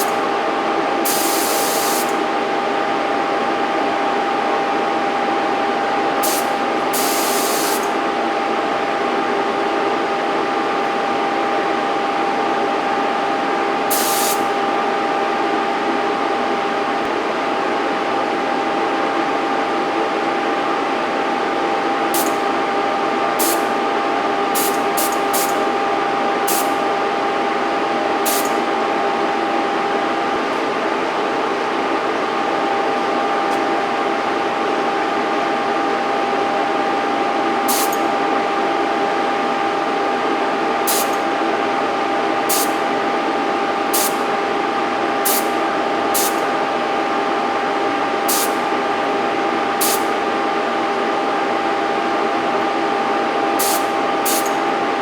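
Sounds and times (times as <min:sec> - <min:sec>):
steady mechanical hum: 0:00.0 - 0:55.0
spray gun hissing bursts: 0:01.0 - 0:02.2, 0:06.2 - 0:07.9, 0:13.9 - 0:14.4, 0:23.4 - 0:23.6, 0:24.6 - 0:25.6, 0:26.5 - 0:26.7, 0:28.3 - 0:28.5, 0:37.7 - 0:38.0, 0:40.9 - 0:41.2, 0:42.5 - 0:42.7, 0:44.0 - 0:44.2, 0:45.2 - 0:45.5, 0:46.2 - 0:46.4, 0:48.3 - 0:48.6, 0:49.8 - 0:50.1, 0:53.6 - 0:54.5.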